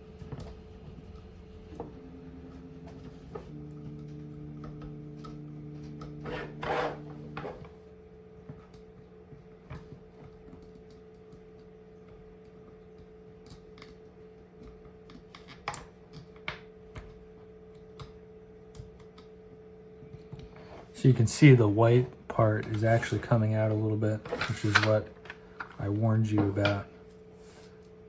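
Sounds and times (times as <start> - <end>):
low hum: 0.0 - 7.6
cord rasping through holes: 1.7 - 7.7.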